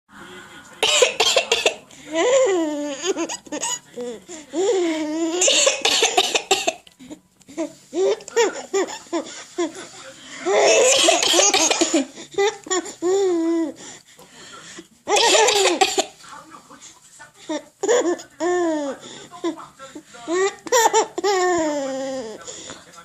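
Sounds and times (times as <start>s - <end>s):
baby laughing: 2.1s - 5.8s, 7.5s - 13.8s, 17.5s - 19.6s, 20.3s - 22.4s.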